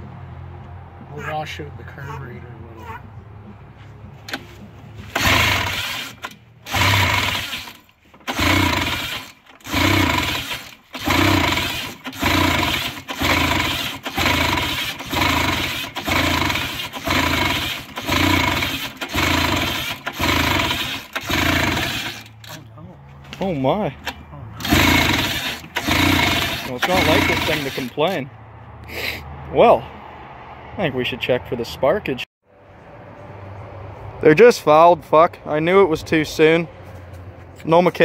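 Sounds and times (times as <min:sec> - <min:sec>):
snowmobile engine cranking: 0:05.0 - 0:22.6, 0:24.0 - 0:28.2.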